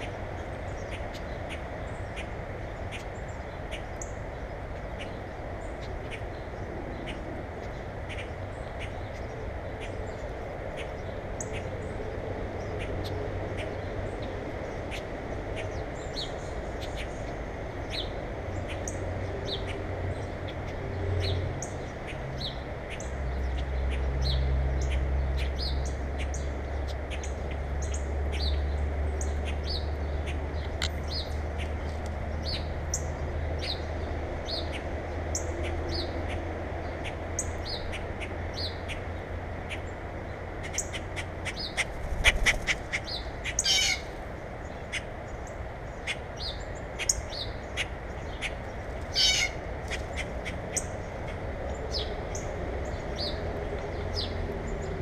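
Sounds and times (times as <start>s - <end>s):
songbirds chirping: 0.0s - 55.0s
harsh chattering bird calls: 40.6s - 54.9s.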